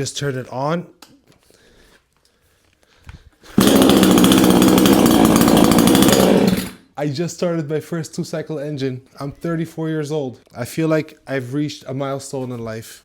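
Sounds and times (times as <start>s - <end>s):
chainsaw engine running: 3.6s - 6.8s.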